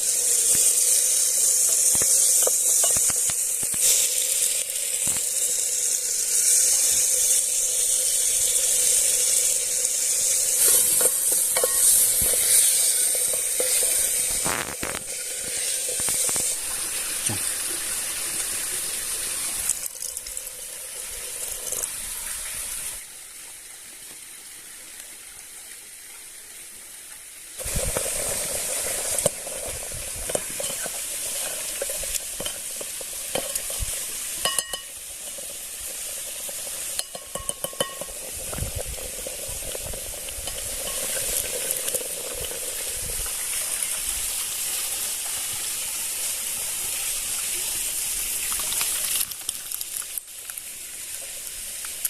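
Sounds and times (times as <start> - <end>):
food sizzling in a pan: 0.0 - 26.4, 27.0 - 52.0
stirring clicks and scrapes: 27.6 - 35.5.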